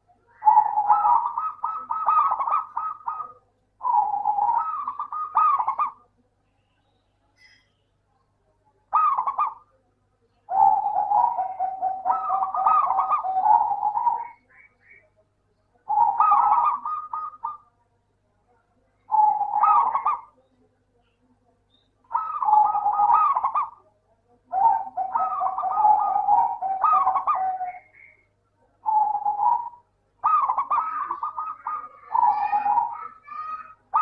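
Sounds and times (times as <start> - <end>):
dove cooing: 0.0 - 6.1, 8.9 - 9.8, 10.5 - 14.7, 15.8 - 17.7, 19.1 - 20.4, 22.1 - 23.9, 24.5 - 28.2, 28.8 - 34.0.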